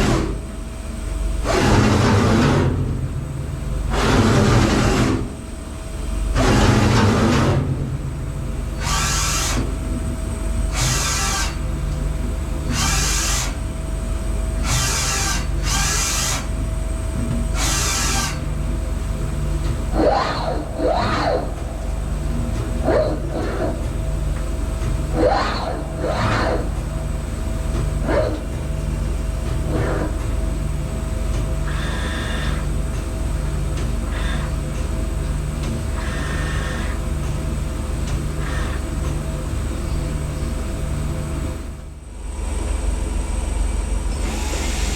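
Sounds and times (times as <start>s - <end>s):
steady machine hum: 0.0s - 44.9s
servo whines rising and falling: 19.9s - 22.1s, 25.1s - 26.8s, 44.1s - 44.9s.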